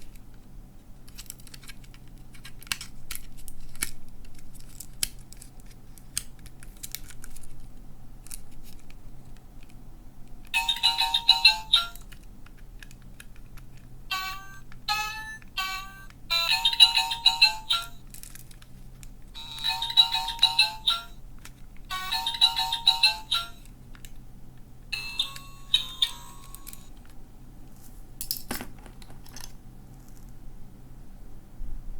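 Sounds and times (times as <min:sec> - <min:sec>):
electronic toy jingles: 0:10.6 - 0:12.0, 0:14.1 - 0:18.0, 0:19.4 - 0:21.1, 0:21.9 - 0:23.6, 0:25.0 - 0:26.9.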